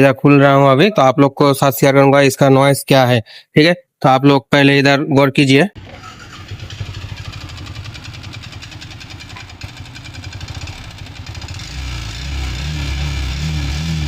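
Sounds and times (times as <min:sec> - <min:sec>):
motorcycle engine knocking rattle: 0:06.4 - 0:11.7.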